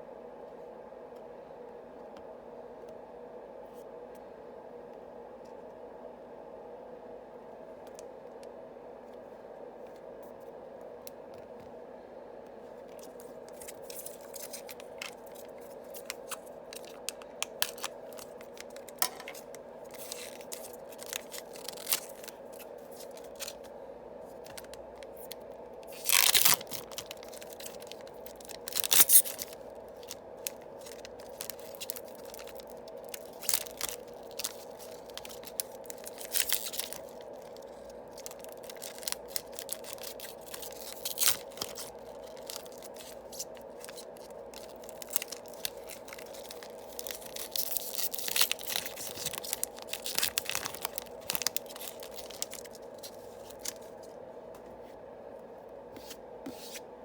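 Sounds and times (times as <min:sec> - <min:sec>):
faint steady hum: 0:00.0 - 0:57.0
booster packs tearing: 0:13.0 - 0:23.7, 0:24.3 - 0:54.0.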